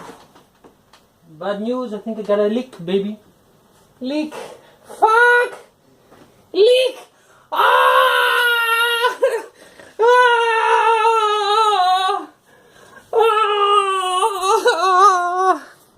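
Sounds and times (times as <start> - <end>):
person wailing: 6.6 - 12.4, 13.1 - 15.8.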